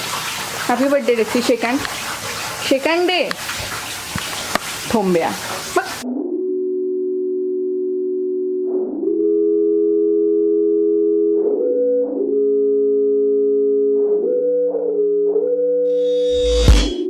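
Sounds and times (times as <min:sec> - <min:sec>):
slow keyboard chords: 0:06.0 - 0:15.9.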